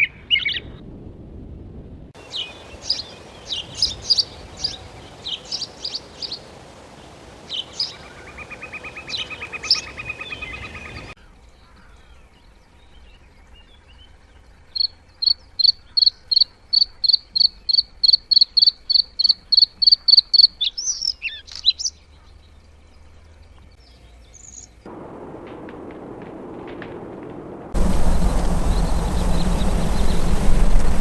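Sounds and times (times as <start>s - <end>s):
rushing background noise: 21.4s - 31.0s.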